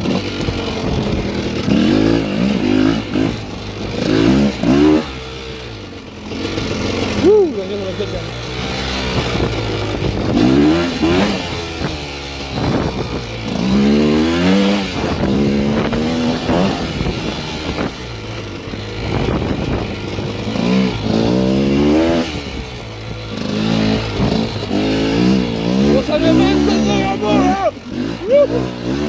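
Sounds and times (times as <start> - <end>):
two-stroke motorcycle engine revving: 0.0 - 29.0.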